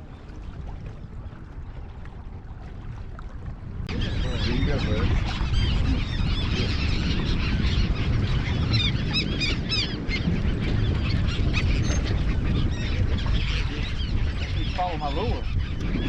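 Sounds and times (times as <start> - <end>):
wind rumble on microphone: 0.0 - 16.0
birds calling: 3.9 - 16.0.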